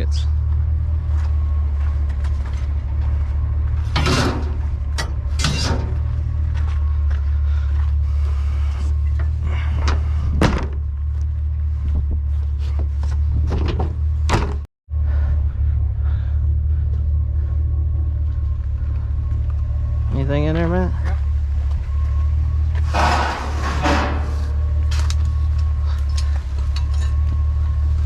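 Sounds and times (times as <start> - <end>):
steady low rumble: 0.0 - 28.0
sharp knocks and clunks: 9.8 - 10.9, 12.7 - 14.7.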